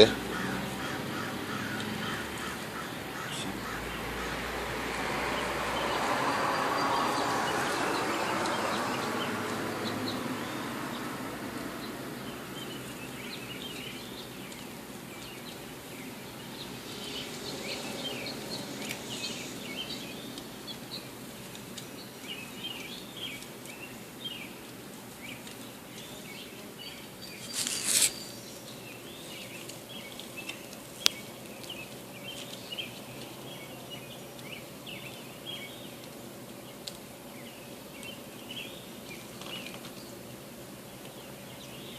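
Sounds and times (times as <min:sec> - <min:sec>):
broad rushing noise: 0:00.0 - 0:12.5
small birds chirping: 0:00.0 - 0:41.9.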